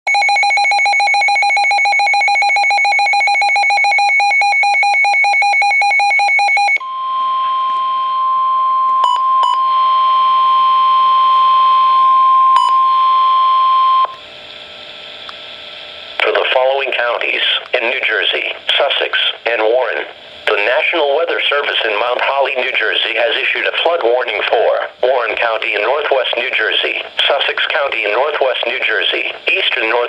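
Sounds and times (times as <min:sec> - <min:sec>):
fast-pulsing electronic alarm beep: 0:00.1 - 0:14.1
steady warning alert tone: 0:00.1 - 0:14.2.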